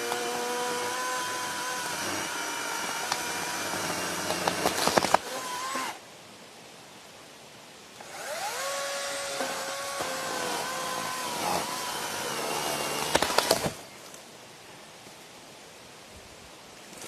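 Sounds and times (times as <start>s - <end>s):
electric chainsaw whining: 0.0s - 6.0s, 8.0s - 13.8s
sharp cracks: 3.9s - 5.3s, 12.8s - 13.8s.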